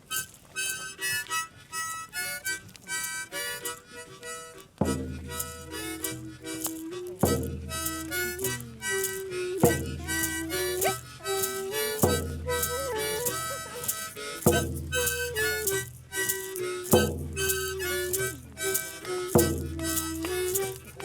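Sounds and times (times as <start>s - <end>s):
slow reedy melody: 0.0s - 21.0s
deep low beat: 4.8s - 21.0s.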